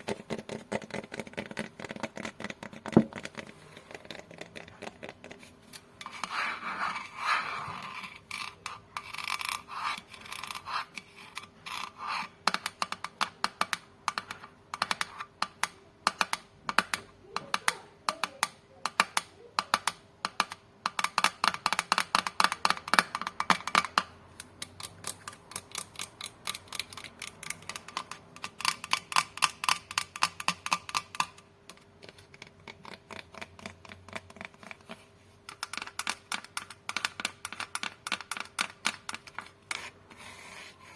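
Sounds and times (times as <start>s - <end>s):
scratching on glass: 0.0s - 12.4s.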